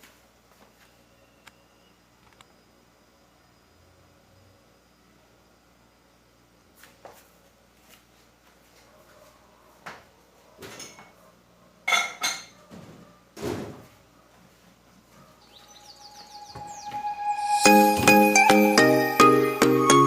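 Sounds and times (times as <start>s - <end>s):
dishes knocking and clinking: 11.9s - 13.0s
chiming music jingle: 16.0s - 20.0s.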